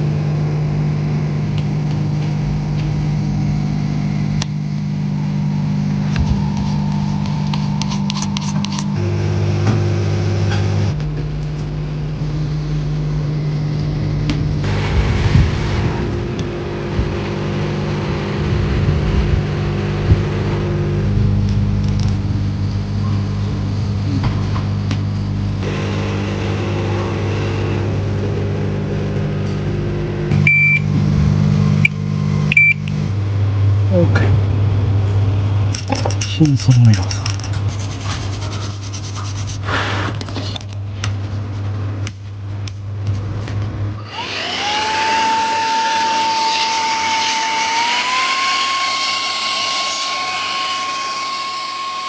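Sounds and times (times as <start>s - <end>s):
electric blower motor whining: 0.0s - 37.0s, 42.7s - 52.0s
electrical hum of equipment: 0.0s - 49.1s
rush of air: 14.6s - 17.3s.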